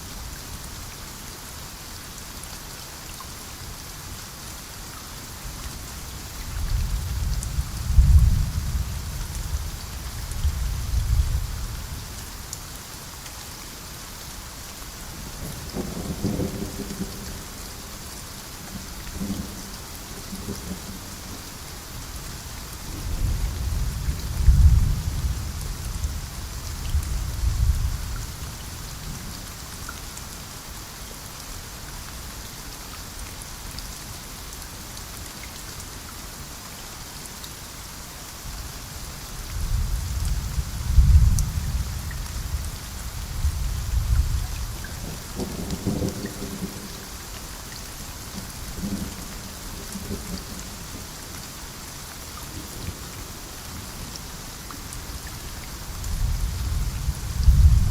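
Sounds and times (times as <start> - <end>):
steady rain: 0.0 - 57.9
thunder rumbling: 56.1 - 57.9.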